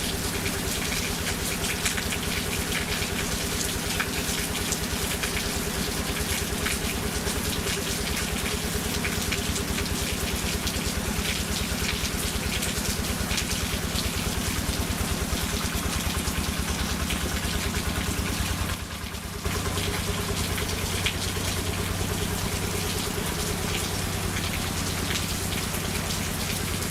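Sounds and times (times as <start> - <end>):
diesel tractor engine running: 0.0 - 26.9
rain pattering: 0.0 - 26.9.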